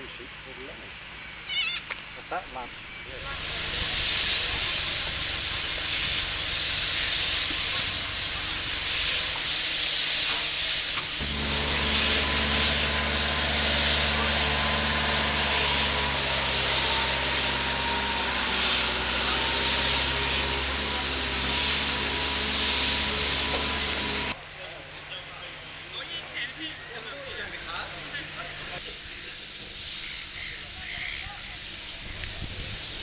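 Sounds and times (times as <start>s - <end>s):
low machinery hum: 2.8s - 24.4s
steam engine hissing rhythmically: 3.1s - 24.4s, 27.8s - 33.0s.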